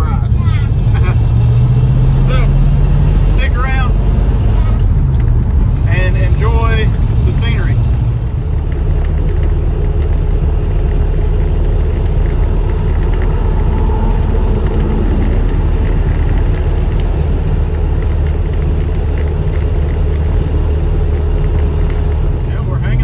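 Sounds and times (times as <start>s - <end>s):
car engine drone: 0.0s - 23.0s
small rattles in car cabin: 0.0s - 23.0s
tyre and road rumble: 0.0s - 23.0s.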